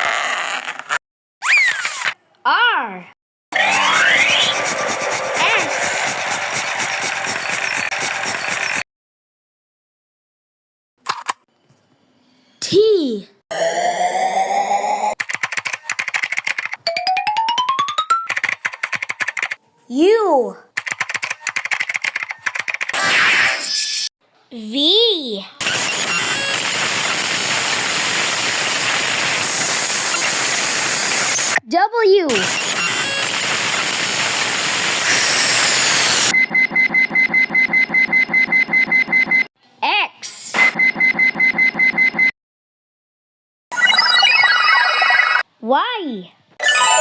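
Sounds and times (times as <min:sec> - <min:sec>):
rapid high-pitched electronic beeping: 0:03.6 - 0:05.2, 0:06.8 - 0:08.8, 0:25.6 - 0:26.8, 0:32.4 - 0:33.9, 0:43.7 - 0:45.4
rapid typing-like clicks: 0:15.2 - 0:16.8, 0:18.3 - 0:19.6, 0:20.8 - 0:23.0
short beeps rising in pitch: 0:36.3 - 0:39.5.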